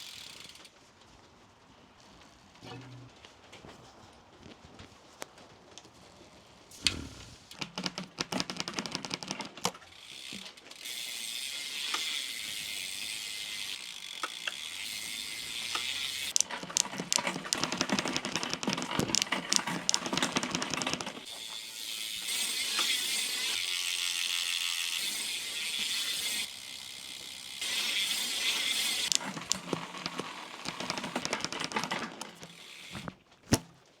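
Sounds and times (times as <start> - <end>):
bicycle chain over sprockets: 0.0 - 0.7, 7.6 - 33.2
freewheel pawls clicking rapidly: 7.8 - 32.9.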